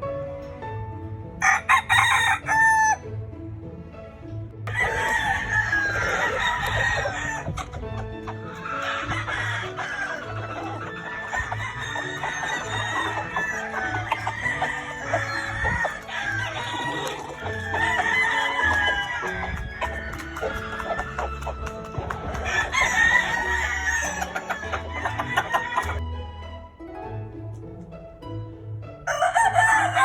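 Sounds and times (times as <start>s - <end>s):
music with steady beat: 1.3s - 29.0s
hens clucking: 1.4s - 3.1s, 4.7s - 26.0s, 29.1s - 30.0s
roosters crowing: 1.4s - 3.1s, 4.7s - 26.0s, 29.0s - 30.0s.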